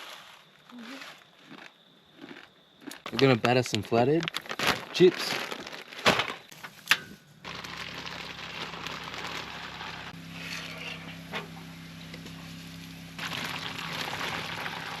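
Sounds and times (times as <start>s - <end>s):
campfire cooking sizzling: 7.4s - 15.0s.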